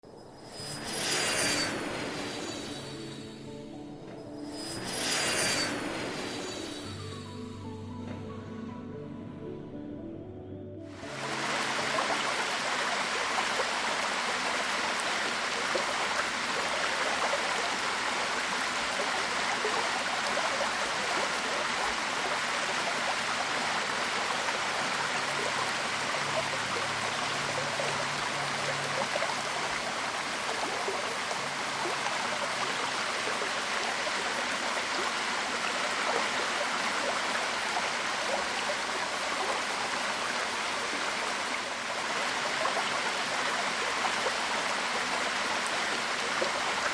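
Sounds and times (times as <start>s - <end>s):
waterfall rushing: 11.0s - 46.9s.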